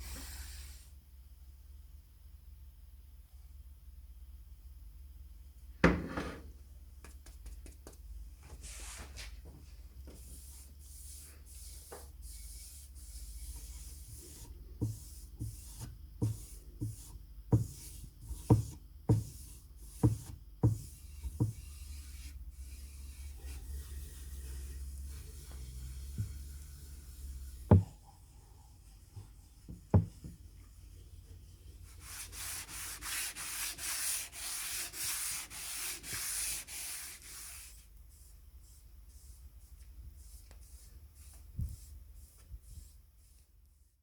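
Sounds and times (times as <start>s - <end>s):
rubbing or scraping strokes: 10.1s - 27.8s, 31.9s - 43.5s
knocks: 27.7s - 28.0s, 30.0s - 30.4s.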